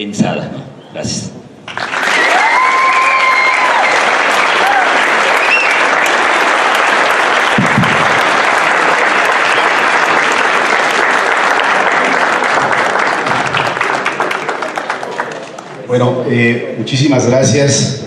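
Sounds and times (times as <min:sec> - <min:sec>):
audience clapping: 0:01.6 - 0:15.9.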